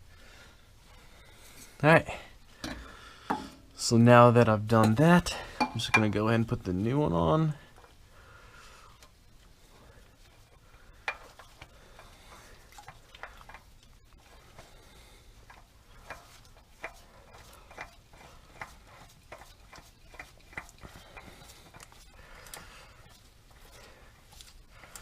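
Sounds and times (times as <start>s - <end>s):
oil filter clicks and scrapes: 10.3s - 25.0s.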